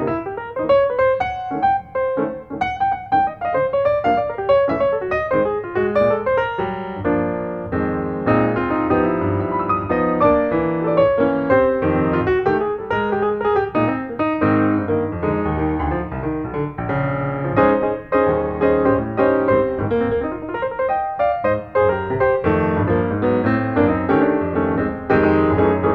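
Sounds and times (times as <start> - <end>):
piano music: 0.0 - 25.9.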